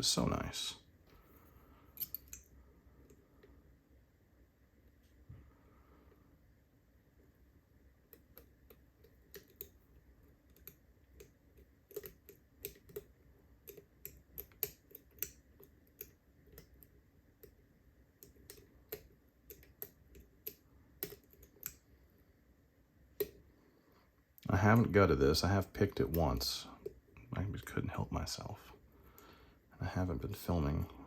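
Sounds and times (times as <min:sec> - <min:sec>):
lock pick metal clicks: 0:02.0 - 0:02.5.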